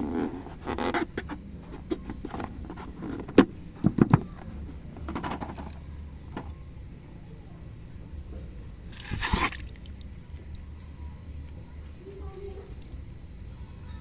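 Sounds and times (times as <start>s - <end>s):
slime squishing with wet clicks: 9.5s - 10.9s.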